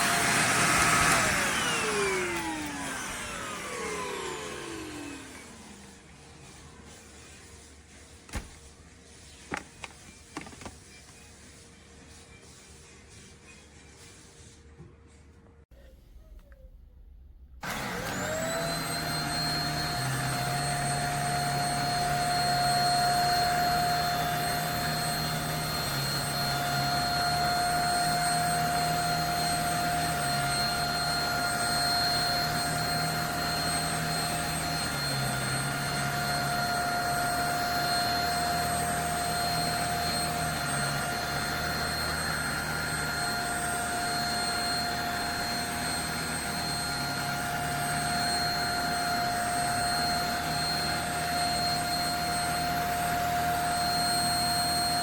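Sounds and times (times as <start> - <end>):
vacuum motor whining: 0.0 - 5.9, 17.6 - 55.0.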